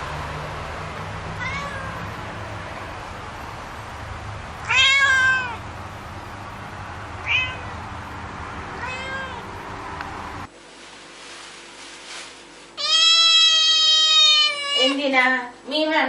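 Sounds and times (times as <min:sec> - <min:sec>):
steady background hum: 0:00.0 - 0:16.0
cat meowing: 0:01.4 - 0:02.2, 0:04.6 - 0:05.6, 0:07.2 - 0:07.9, 0:08.8 - 0:09.6, 0:12.8 - 0:15.0.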